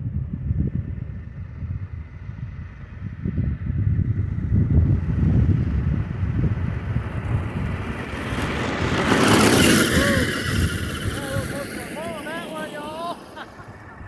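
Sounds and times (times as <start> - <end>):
toy car rumbling over ground: 4.4 - 14.0.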